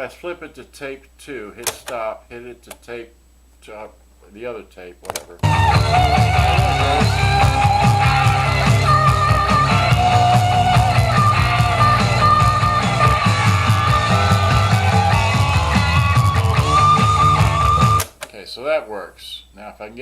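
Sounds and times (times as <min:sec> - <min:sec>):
rock music with guitar: 0:05.4 - 0:18.1.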